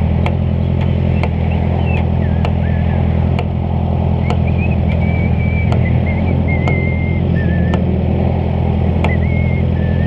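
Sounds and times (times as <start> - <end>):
motorcycle engine running: 0.0 - 10.0
thin wavering whistle: 1.2 - 3.1, 4.1 - 8.2, 9.0 - 10.0.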